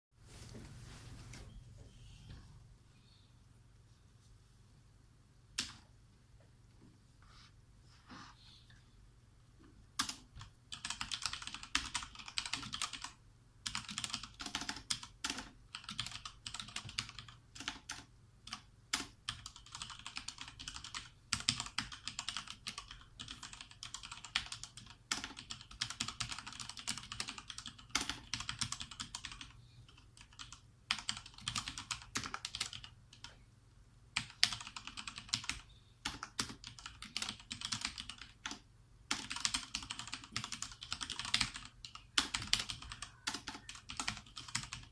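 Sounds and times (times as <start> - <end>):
mechanical keyboard typing: 10.0 - 33.3, 34.2 - 44.9.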